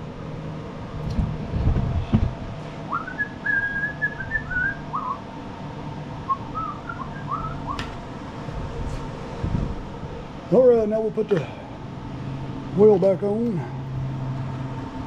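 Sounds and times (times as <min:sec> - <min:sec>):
person whistling a tune: 0:02.9 - 0:05.2, 0:06.3 - 0:07.8.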